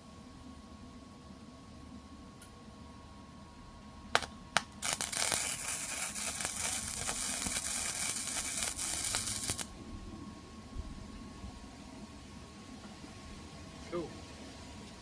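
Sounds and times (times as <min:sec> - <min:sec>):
arc welding crackling hiss: 0:04.2 - 0:09.7.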